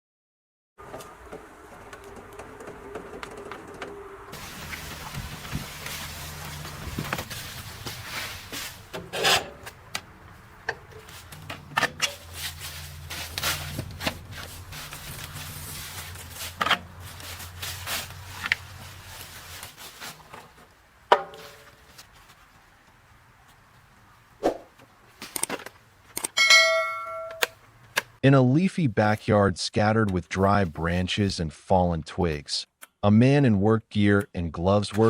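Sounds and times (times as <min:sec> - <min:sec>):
wood chipper engine humming: 0:00.8 - 0:19.4
branches cracking and knocking: 0:00.9 - 0:22.5
loud metallic clang: 0:26.4 - 0:27.5.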